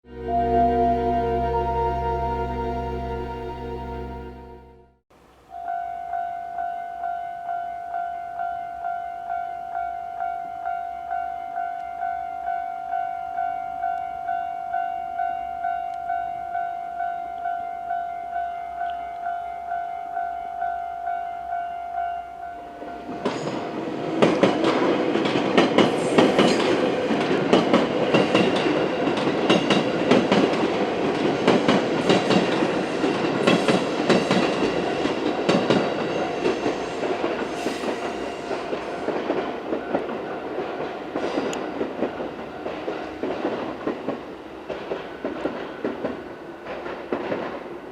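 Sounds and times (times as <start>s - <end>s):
level crossing warning bell: 0.1s - 4.8s, 5.6s - 24.0s.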